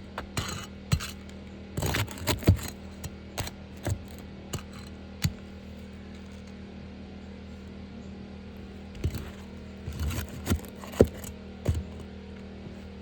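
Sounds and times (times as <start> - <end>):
scraping rattle: 0.2 - 1.2, 9.0 - 12.0.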